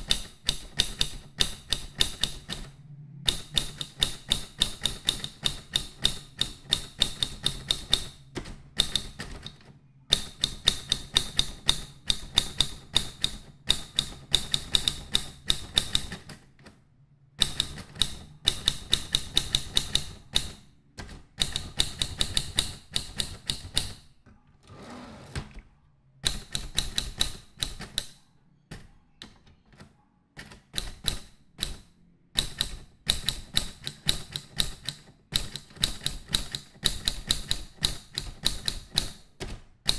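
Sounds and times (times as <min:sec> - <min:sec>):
typewriter keys clacking: 0:17.4 - 0:24.0, 0:26.2 - 0:28.9, 0:30.4 - 0:39.9.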